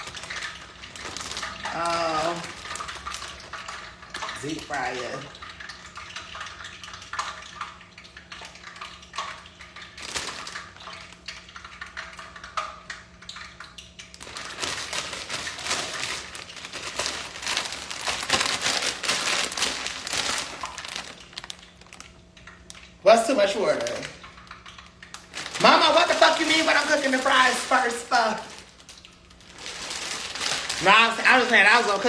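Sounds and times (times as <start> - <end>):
dense crackling: 14.2 - 23.0.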